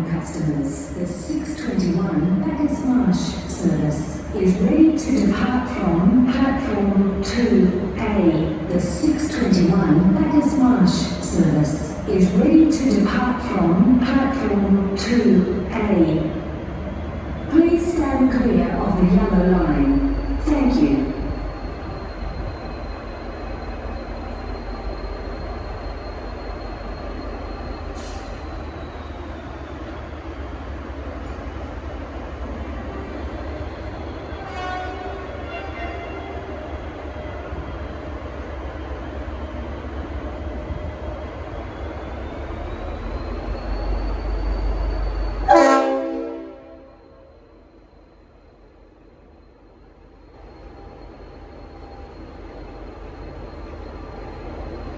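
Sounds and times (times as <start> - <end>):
diesel locomotive rumbling: 0.0 - 54.9
locomotive horn blast: 45.5 - 47.3.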